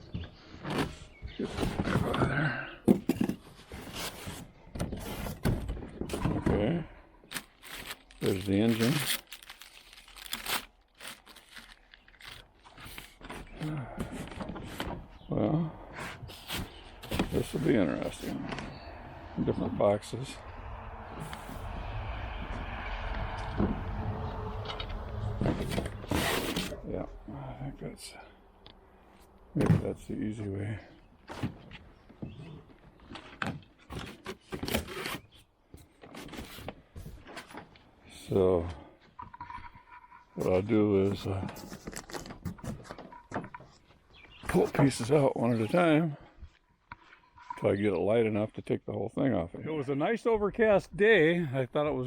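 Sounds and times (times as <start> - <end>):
scraping and rustling: 3.0 - 6.5, 23.0 - 26.9
cardboard crunching and crinkling: 7.3 - 15.1, 25.6 - 26.9, 41.5 - 43.0.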